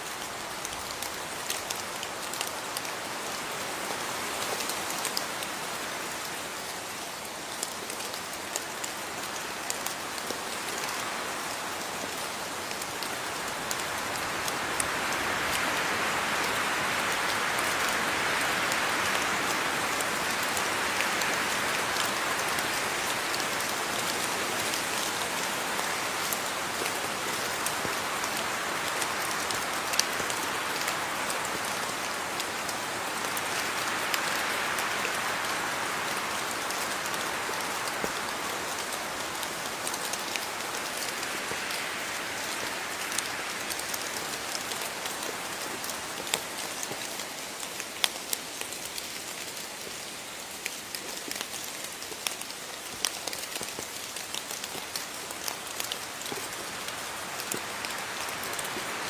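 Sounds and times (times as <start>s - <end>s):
steady rain hiss: 0.0s - 59.0s
raindrop ticks: 50.6s - 58.9s.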